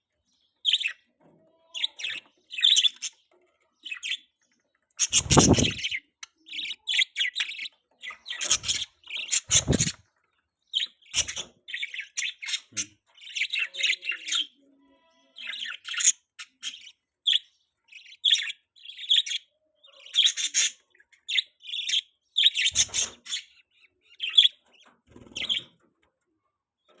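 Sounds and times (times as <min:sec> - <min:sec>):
baby budgerigar chirping: 0:00.6 - 0:01.0, 0:01.6 - 0:04.3, 0:05.0 - 0:10.0, 0:10.7 - 0:25.8
dull thumps: 0:05.1 - 0:05.8.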